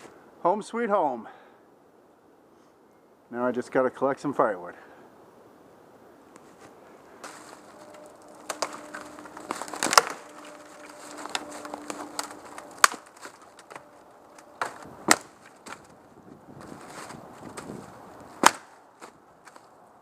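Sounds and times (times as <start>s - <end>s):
rustling of leaves and twigs: 6.1s - 20.0s
dry sticks snapping: 7.2s - 19.7s.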